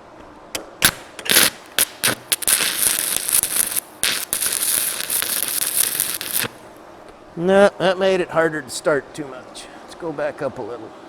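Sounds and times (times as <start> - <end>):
welding arc crackling: 0.8 - 6.6.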